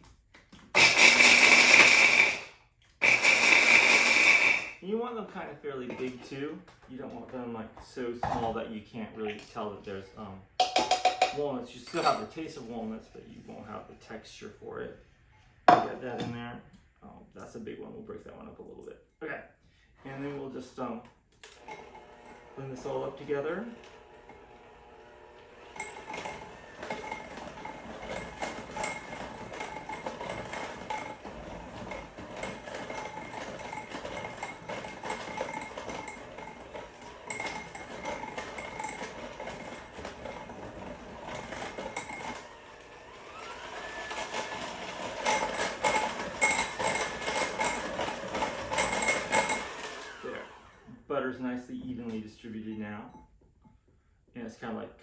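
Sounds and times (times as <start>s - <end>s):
electric mixer motor whining: 0.8s - 4.8s, 21.6s - 51.0s
beaters clattering against bowl: 10.6s - 12.3s, 25.6s - 42.5s, 44.0s - 50.3s.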